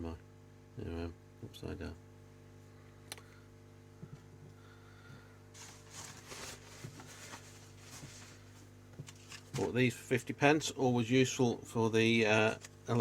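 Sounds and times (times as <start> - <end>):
low electrical hum: 0.0 - 13.0
rustling: 5.6 - 9.7.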